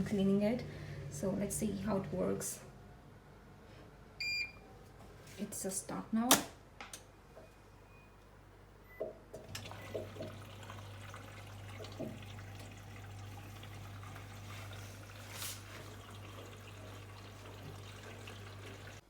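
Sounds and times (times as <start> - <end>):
water running into machine: 9.4 - 19.0.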